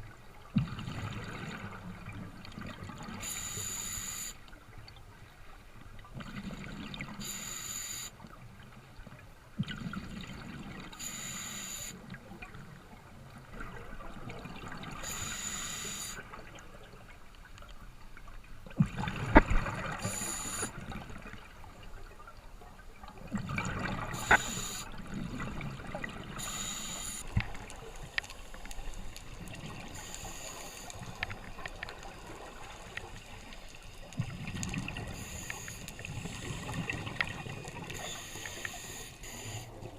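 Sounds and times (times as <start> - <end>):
ocean water sloshing: 12.0 - 39.9.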